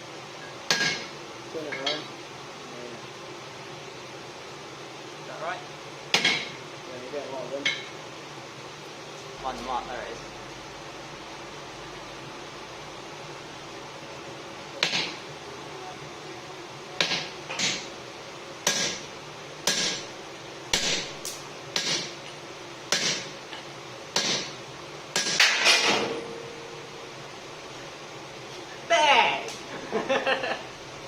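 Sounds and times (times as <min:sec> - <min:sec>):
hammer striking steel on anvil: 0:00.7 - 0:01.1, 0:18.6 - 0:19.0, 0:19.6 - 0:20.1, 0:20.7 - 0:21.1, 0:21.8 - 0:22.1, 0:22.9 - 0:23.3, 0:24.2 - 0:24.6, 0:25.2 - 0:26.5.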